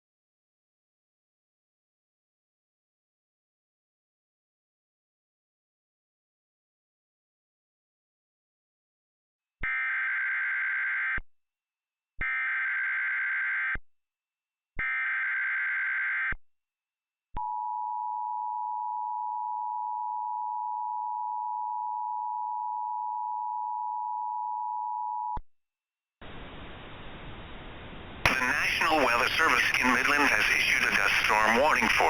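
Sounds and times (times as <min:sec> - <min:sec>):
buzzy digital data tones: 0:28.3 - 0:32.0.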